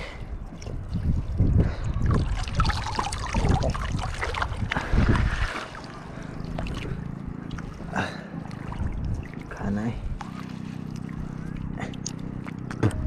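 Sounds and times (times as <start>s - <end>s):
wind buffeting microphone: 0.0s - 10.3s
seawater splashing: 2.0s - 13.0s.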